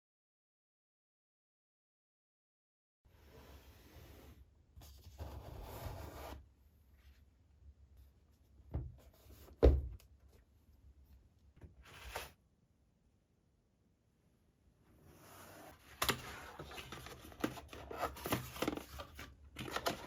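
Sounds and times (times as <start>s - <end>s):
packaging rustling: 16.0s - 20.0s.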